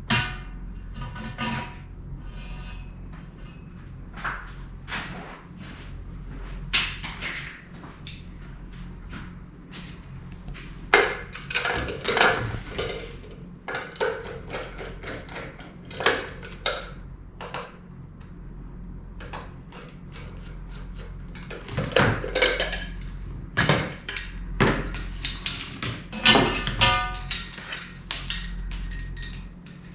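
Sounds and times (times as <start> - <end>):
steady low hum: 0.0 - 29.9
metal parts and tools clanking: 11.0 - 16.5, 24.9 - 29.9.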